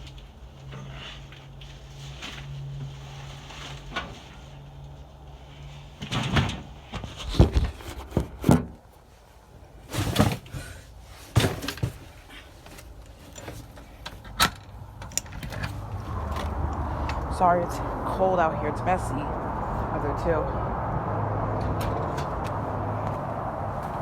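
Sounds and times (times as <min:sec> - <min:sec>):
cardboard boxes shoved: 0:09.8 - 0:12.3.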